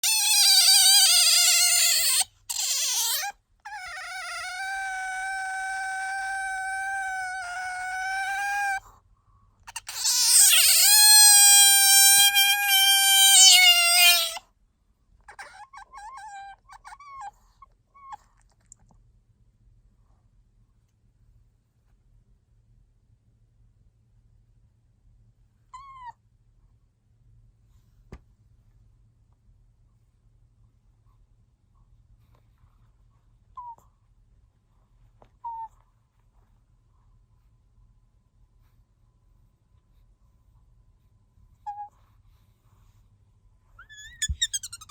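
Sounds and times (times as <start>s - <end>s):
otter squealing: 0.0s - 8.8s, 9.8s - 14.4s, 43.8s - 44.9s.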